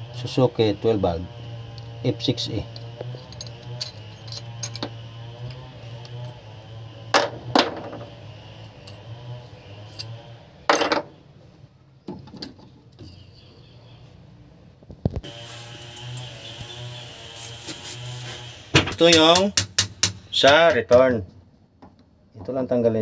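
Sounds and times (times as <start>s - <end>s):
metal tools knocking: 2.7s - 6.3s.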